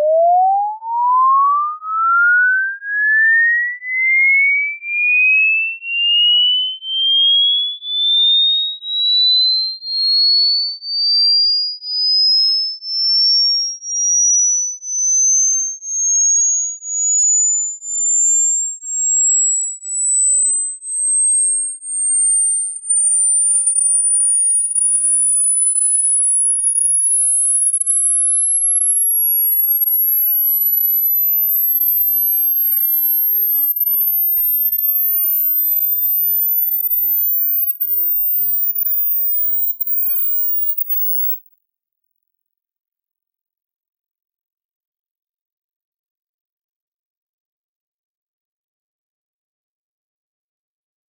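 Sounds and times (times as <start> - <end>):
sine test tone sweeping upward: 0.0 - 41.4.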